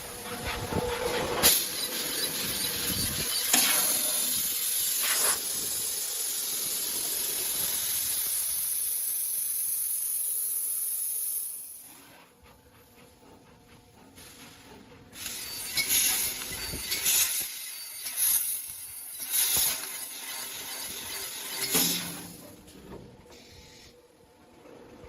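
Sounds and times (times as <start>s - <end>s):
laser cutting head hiss: 1.5s - 11.6s, 15.2s - 22.2s.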